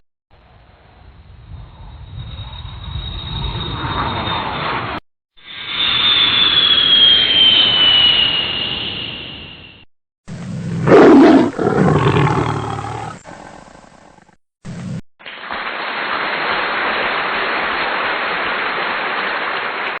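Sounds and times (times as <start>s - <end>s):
loud roar: 10.4s - 14.2s.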